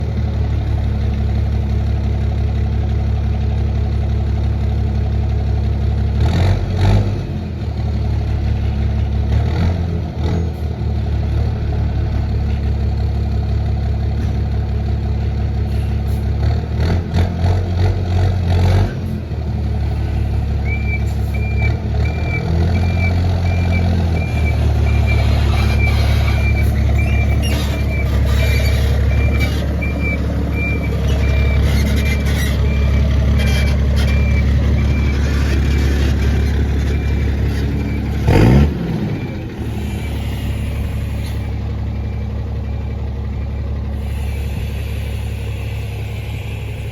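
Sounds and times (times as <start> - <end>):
diesel truck engine revving: 5.5 - 46.9
reversing beeper: 20.0 - 46.9.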